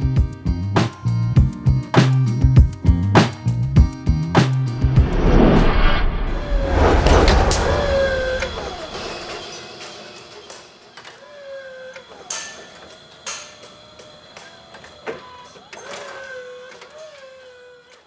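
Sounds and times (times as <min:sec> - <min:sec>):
music with gliding tones: 0:00.0 - 0:05.7.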